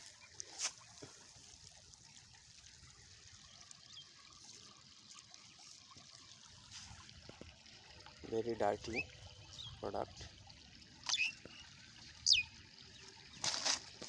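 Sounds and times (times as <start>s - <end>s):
small river trickling: 0.0s - 14.0s
faint bird chirp: 11.1s - 13.4s.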